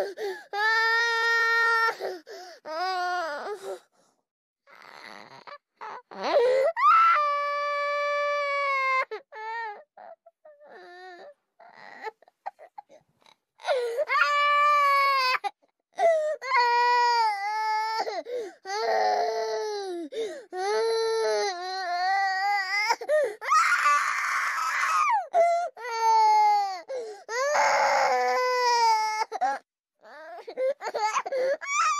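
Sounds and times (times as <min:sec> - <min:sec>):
baby crying: 0:13.6 - 0:31.9.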